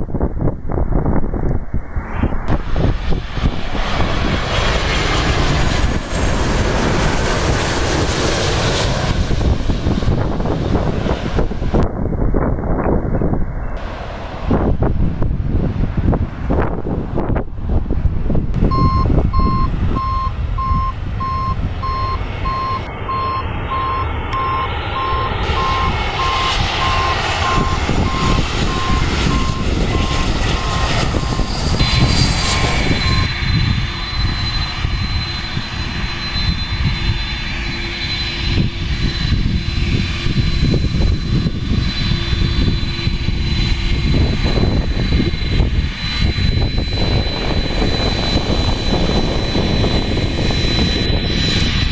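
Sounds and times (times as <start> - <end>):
jet engines passing: 0.0 - 51.9
wind rumble on microphone: 0.0 - 51.9
pulsed beeping: 18.7 - 38.5.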